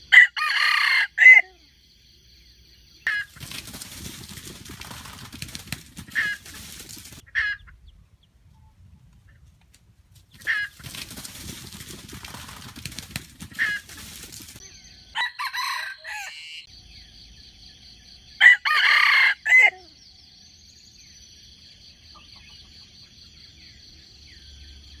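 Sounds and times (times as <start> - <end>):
rooster crowing: 0.1 - 1.6, 14.8 - 16.7, 18.4 - 19.9
rooster clucking: 3.1 - 7.9, 10.3 - 11.0, 12.0 - 14.3
rustling: 3.2 - 7.2, 9.1 - 14.6.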